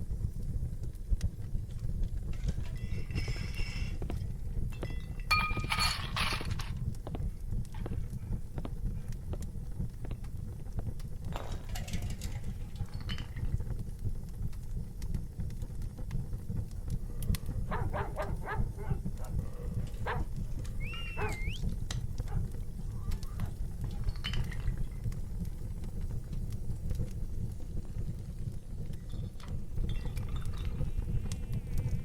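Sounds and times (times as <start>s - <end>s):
low rumble: 6.6s - 24.0s.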